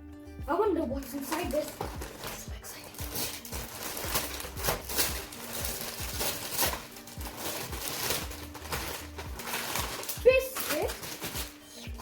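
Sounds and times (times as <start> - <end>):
wrapping paper tearing: 1.0 - 12.0.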